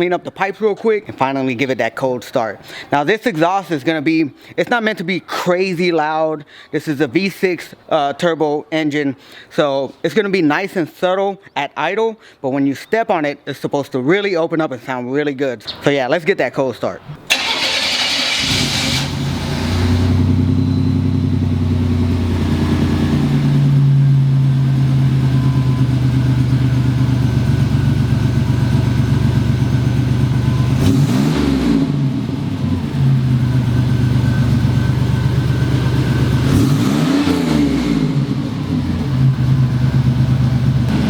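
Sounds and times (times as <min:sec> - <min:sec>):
car engine idling and revving: 0:17.4 - 0:41.0.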